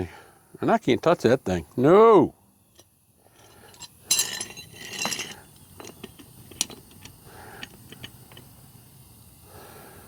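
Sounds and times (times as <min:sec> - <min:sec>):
metal tools clinking: 0:02.7 - 0:08.5.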